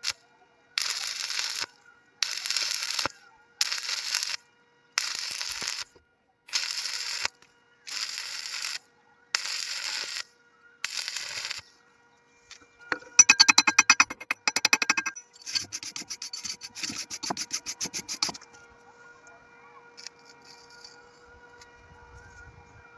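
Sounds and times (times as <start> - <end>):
arc welder hissing bursts: 0.8 - 4.4, 5.0 - 5.9, 6.5 - 7.3, 7.9 - 8.8, 9.4 - 10.2, 10.8 - 11.6, 15.4 - 18.4
metal ticking and scraping: 12.9 - 18.4.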